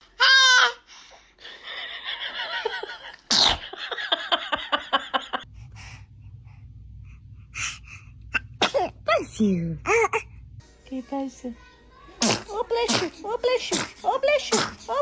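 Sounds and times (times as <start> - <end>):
baby sneezing: 3.3 - 3.6, 8.4 - 9.0, 12.2 - 15.0.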